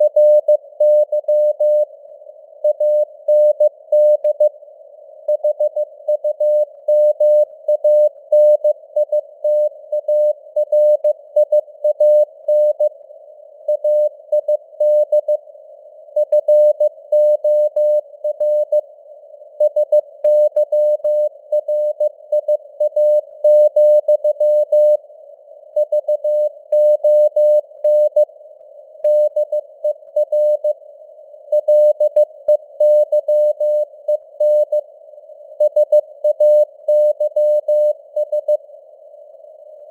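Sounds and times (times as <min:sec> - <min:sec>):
morse code beeps: 0:29.1 - 0:30.8, 0:35.6 - 0:38.6.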